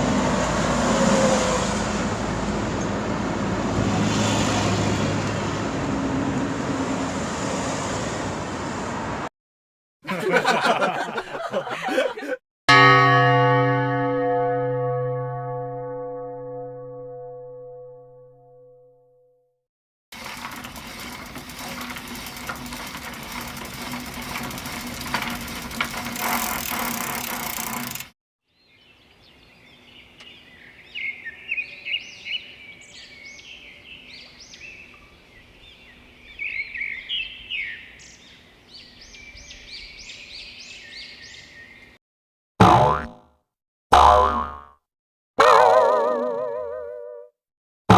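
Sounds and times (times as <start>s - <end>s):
birds chirping: 28.6s - 42.0s.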